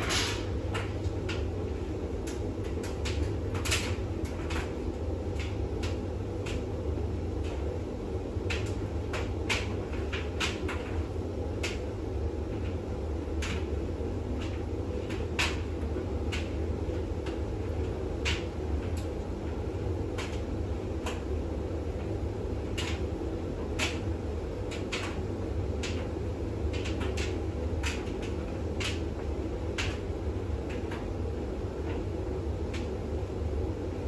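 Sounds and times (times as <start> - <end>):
washing machine motor and drum hum: 0.0 - 34.0.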